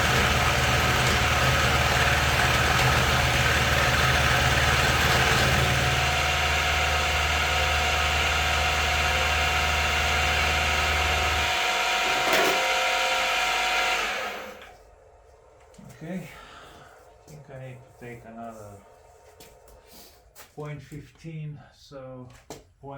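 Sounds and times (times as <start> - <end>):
milling machine running: 0.0 - 14.8.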